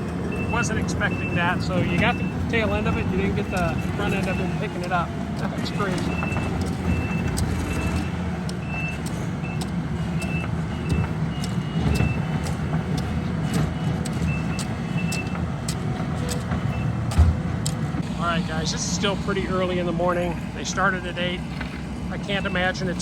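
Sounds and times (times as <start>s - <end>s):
heavy diesel machinery running: 0.0s - 23.0s
backup alarm beeps: 0.1s - 17.4s, 22.1s - 23.0s
low thump: 17.1s - 17.6s.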